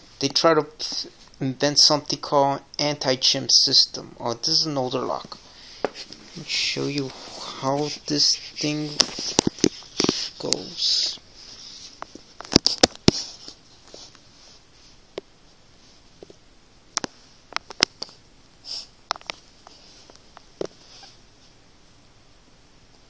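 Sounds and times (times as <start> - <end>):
breathy sniffs: 18.6 - 18.9.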